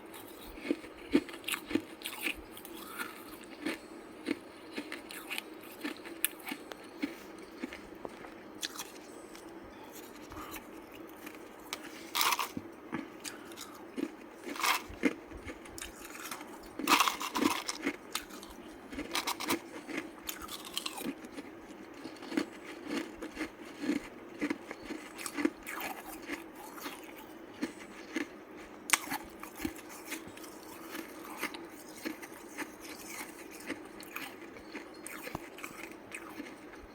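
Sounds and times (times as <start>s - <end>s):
ice crunching: 15.9s - 21.1s.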